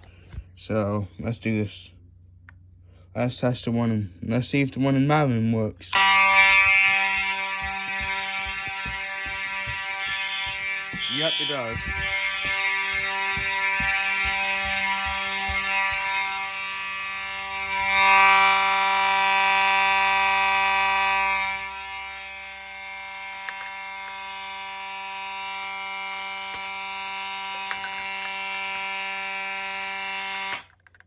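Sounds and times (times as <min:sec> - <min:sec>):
fire alarm horn continuous tone: 0:06.0 - 0:30.7.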